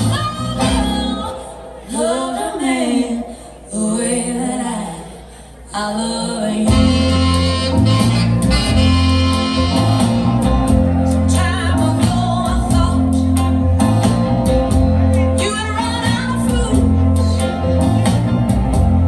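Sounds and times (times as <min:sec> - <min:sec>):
song with vocal bass and drums: 0:06.3 - 0:08.8, 0:09.7 - 0:19.0.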